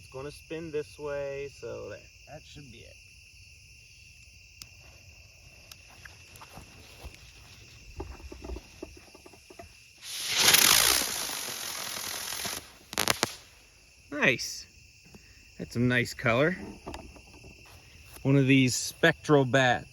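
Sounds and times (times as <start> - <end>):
crickets chirping: 0.0 - 19.9
firework rushing hiss: 10.0 - 13.8.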